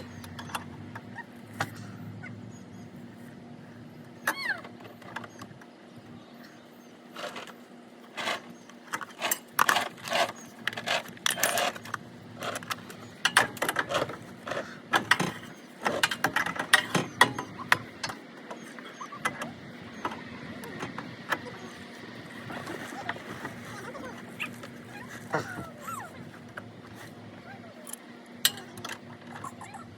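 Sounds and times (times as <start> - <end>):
metal tools clanking and rattling: 7.2 - 21.6, 27.9 - 29.5.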